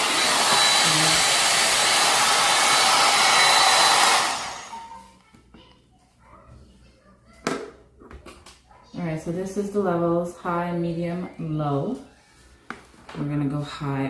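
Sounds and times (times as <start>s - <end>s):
blow dryer running: 0.0s - 5.0s.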